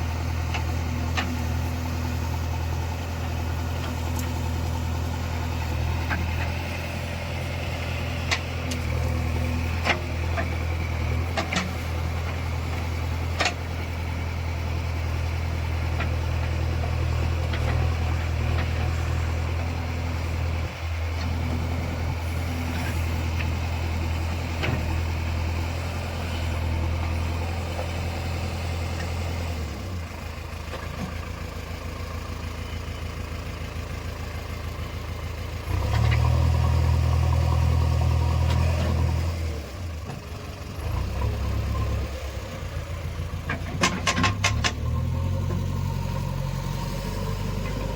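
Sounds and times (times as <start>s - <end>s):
diesel engine running: 0.0s - 47.9s.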